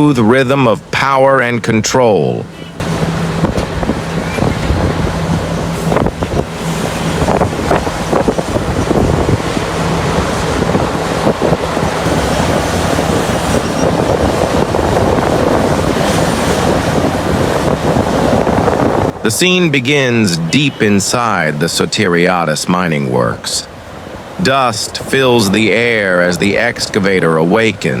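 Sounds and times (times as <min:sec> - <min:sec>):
excavator diesel engine humming: 0:00.0 - 0:28.0
wind buffeting microphone: 0:02.7 - 0:21.6.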